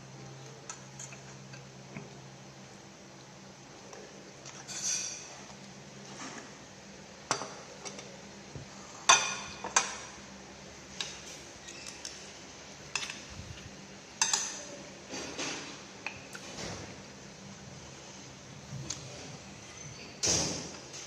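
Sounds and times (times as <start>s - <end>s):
dishes and utensils clinking: 4.5s - 5.4s, 14.2s - 16.6s.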